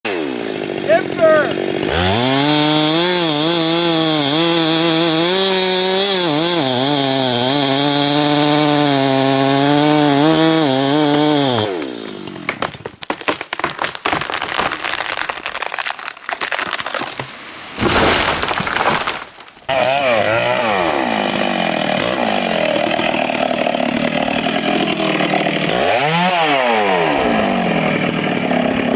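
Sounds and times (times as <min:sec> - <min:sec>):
chainsaw running at high revs: 0:00.1 - 0:12.6, 0:19.8 - 0:28.9
wood cracking and snapping: 0:09.7 - 0:19.7.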